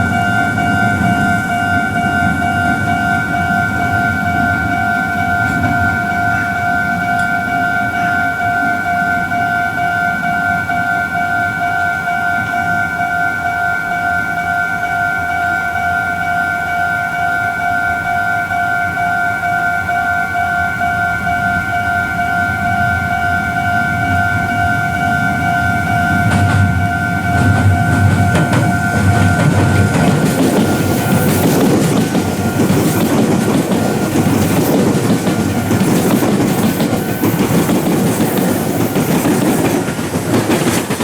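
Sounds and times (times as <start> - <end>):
level crossing warning alarm: 0.0 - 40.6.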